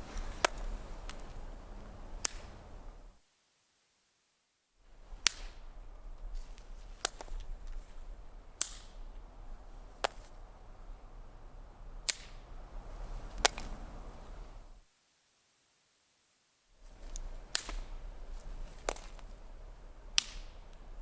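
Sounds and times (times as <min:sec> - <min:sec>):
twigs snapping: 0:00.0 - 0:03.0, 0:05.1 - 0:10.5, 0:12.0 - 0:14.6, 0:16.8 - 0:20.9
faint crackling and rustling: 0:00.0 - 0:04.0, 0:04.8 - 0:11.1, 0:12.1 - 0:16.0, 0:16.8 - 0:21.0.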